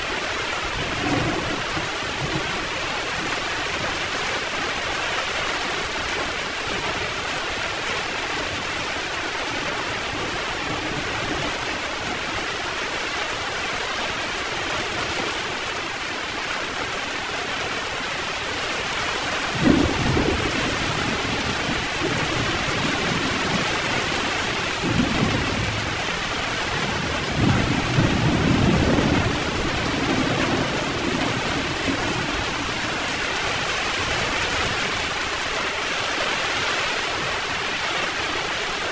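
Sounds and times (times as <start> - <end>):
heavy rain falling: 0.0 - 38.9
thunder crack and rumbles: 0.7 - 3.9, 19.4 - 35.1.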